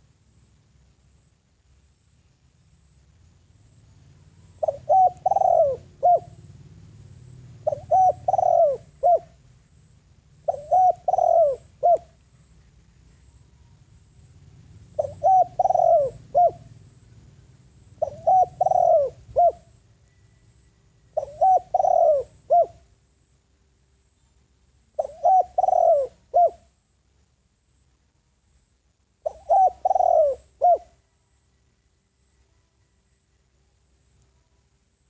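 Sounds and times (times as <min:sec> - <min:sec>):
dove cooing: 0:04.4 - 0:06.6, 0:07.4 - 0:09.4, 0:10.4 - 0:12.2, 0:14.9 - 0:16.9, 0:18.0 - 0:19.8, 0:21.1 - 0:22.9, 0:25.0 - 0:26.7, 0:29.2 - 0:31.0.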